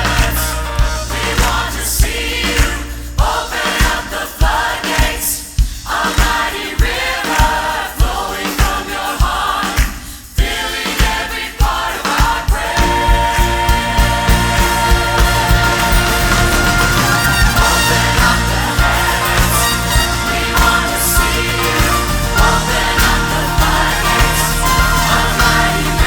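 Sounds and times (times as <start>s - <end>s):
choir singing worship song: 0.0s - 26.0s
steady drum beat: 0.0s - 26.0s
orchestra playing: 12.8s - 26.0s.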